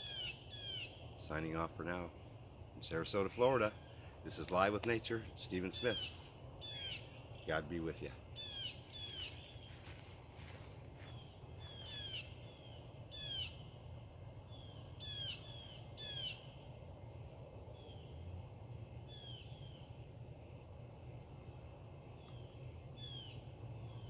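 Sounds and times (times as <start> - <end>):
songbird chirping: 0.0 - 2.2, 2.8 - 17.1, 21.6 - 24.0
low background hum: 0.0 - 24.0.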